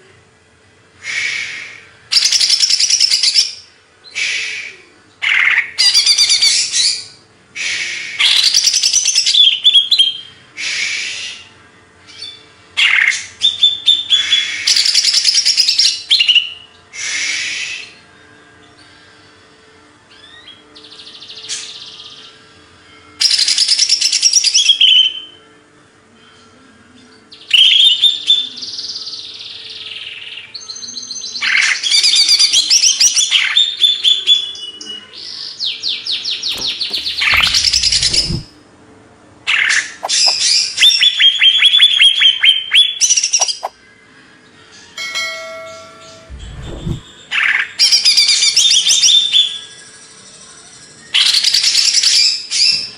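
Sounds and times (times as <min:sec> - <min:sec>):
bird singing whistles and trills: 0:12.1 - 0:18.0, 0:46.0 - 0:52.9.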